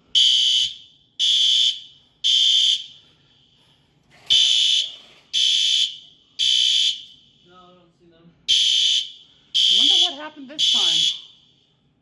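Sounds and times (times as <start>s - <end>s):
fire alarm horn beeping: 0.0s - 3.1s, 4.2s - 7.4s, 8.5s - 11.7s.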